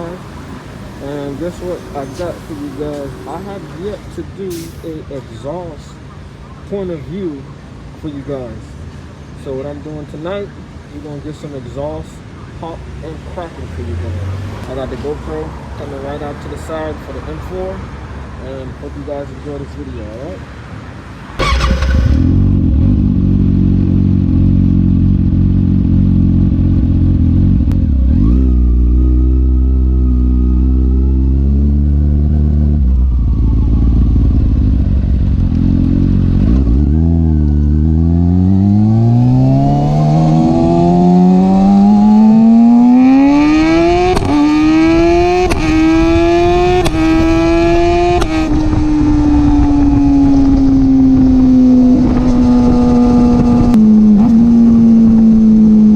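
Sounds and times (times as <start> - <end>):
motorcycle engine revving and accelerating: 21.4 - 55.9.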